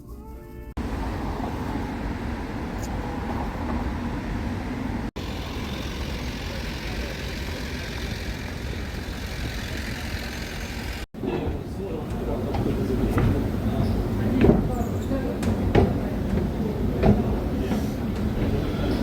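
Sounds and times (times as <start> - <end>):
moving vehicle rumble and hiss: 0.8 - 19.0.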